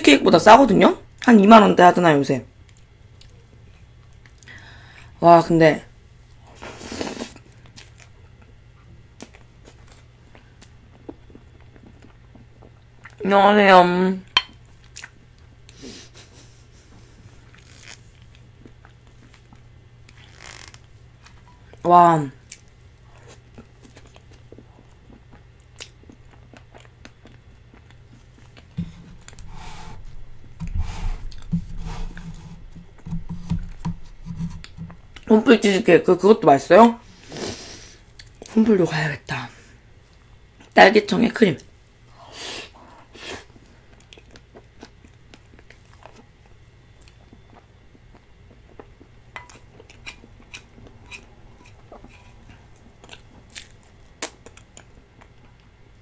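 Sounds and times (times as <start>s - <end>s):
low steady hum: 0.0s - 56.0s
person eating: 6.4s - 8.6s, 14.7s - 21.8s, 22.4s - 35.3s, 42.1s - 55.7s
chewing mouth sounds: 43.9s - 55.7s.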